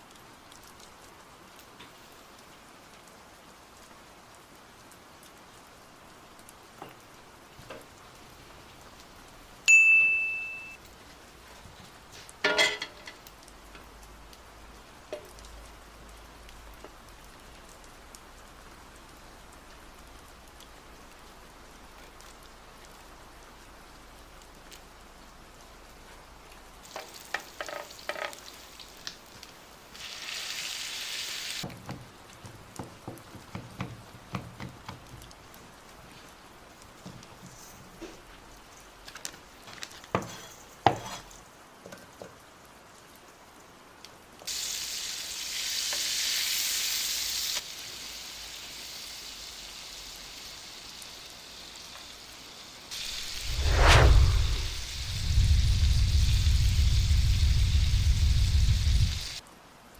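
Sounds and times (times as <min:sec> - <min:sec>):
metallic clink: 0:09.7 - 0:10.8
utensils clattering: 0:12.5 - 0:13.1
food sizzling in a pan: 0:26.8 - 0:31.7, 0:44.5 - 0:59.4.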